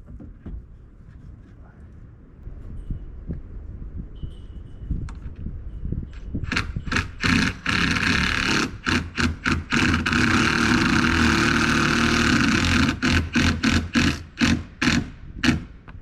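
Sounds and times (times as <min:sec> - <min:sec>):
handheld power tool running: 0:06.5 - 0:15.6.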